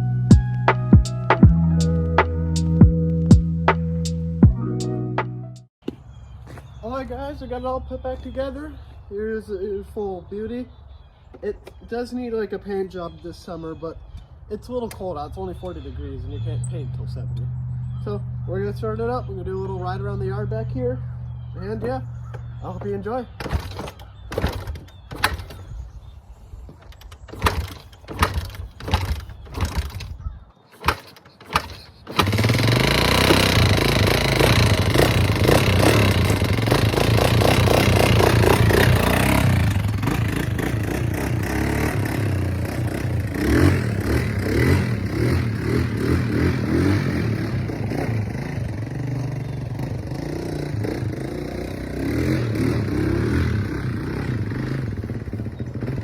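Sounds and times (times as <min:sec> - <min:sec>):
engine cranking and revving: 0:16.3 - 0:25.7, 0:26.7 - 0:56.0.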